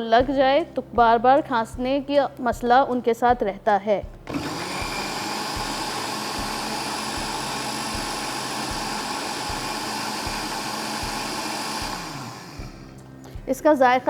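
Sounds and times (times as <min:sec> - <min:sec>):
electric blender running: 0:04.2 - 0:13.0.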